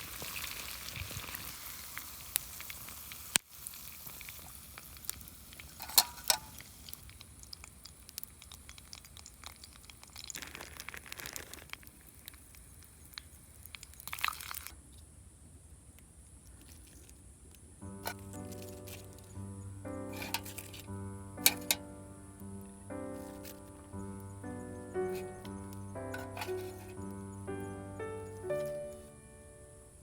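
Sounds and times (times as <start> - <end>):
rustle: 0.0 - 22.0, 23.0 - 27.6
crinkling handling noise: 5.5 - 7.0, 10.1 - 12.7, 17.9 - 29.3.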